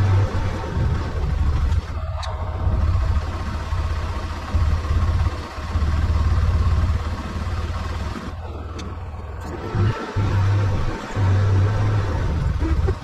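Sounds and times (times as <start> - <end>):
utility vehicle engine rumbling: 0.0 - 13.0.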